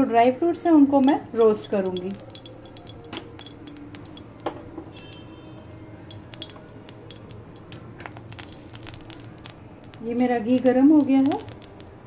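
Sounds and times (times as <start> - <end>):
spoon clinking against pan: 1.0 - 5.2.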